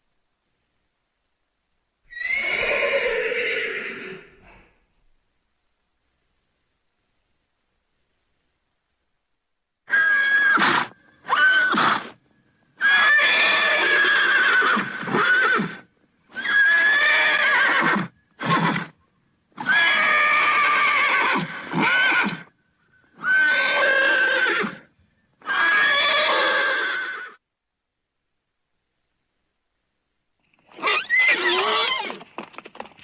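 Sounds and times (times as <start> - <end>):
horse whinnying: 2.1 - 4.6, 9.9 - 12.2, 12.8 - 18.9, 19.6 - 22.5, 23.2 - 27.4, 30.7 - 32.4.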